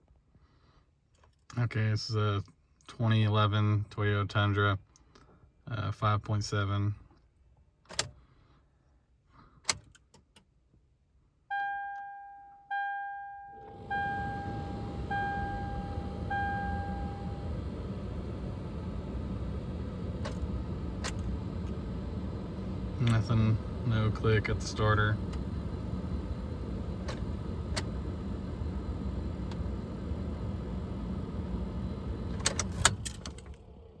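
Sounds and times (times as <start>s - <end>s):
dashboard warning chime: 11.5s - 21.9s
steady low hum: 13.6s - 34.0s
ignition key clicks: 15.4s - 23.6s, 26.9s - 29.8s, 31.4s - 33.6s.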